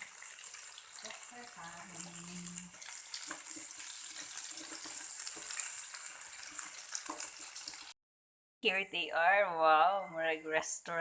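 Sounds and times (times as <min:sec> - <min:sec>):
meat sizzling in a frying pan: 0:00.0 - 0:08.0.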